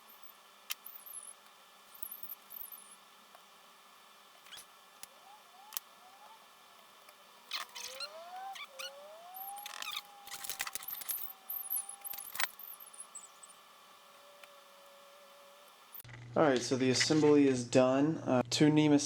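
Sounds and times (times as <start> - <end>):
stepper motor whine: 4.5 - 16.0
clicks and rattles: 9.4 - 13.2.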